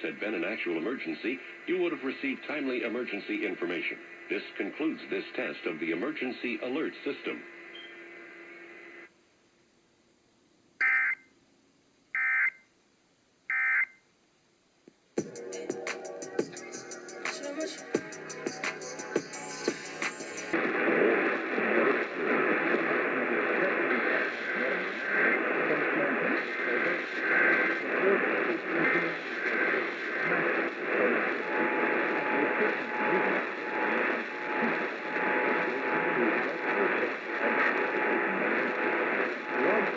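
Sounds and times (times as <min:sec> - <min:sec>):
muffled radio voice: 0:00.0 - 0:07.4, 0:20.6 - 0:39.9
radio static hiss: 0:00.0 - 0:09.2, 0:15.2 - 0:39.9.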